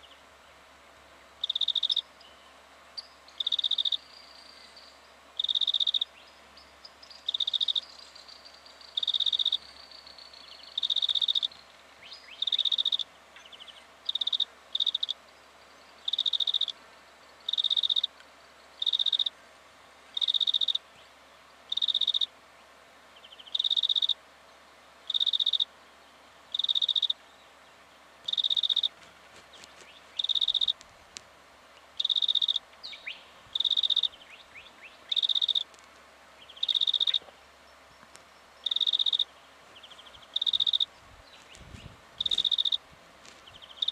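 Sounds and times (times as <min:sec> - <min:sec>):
small animal high-pitched call: 0:03.4 - 0:04.1, 0:14.1 - 0:15.2, 0:25.1 - 0:25.7, 0:33.6 - 0:34.2.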